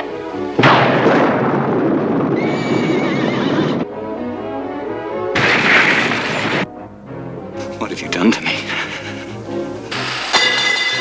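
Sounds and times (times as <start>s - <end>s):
background music: 0.0s - 11.0s
horse whinnying: 2.4s - 3.9s.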